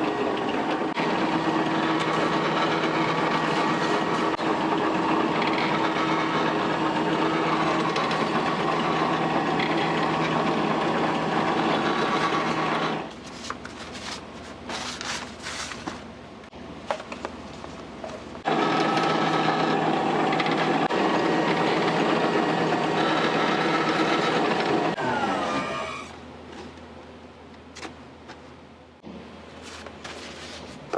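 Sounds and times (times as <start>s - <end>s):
kitchen machine humming: 0.0s - 30.9s.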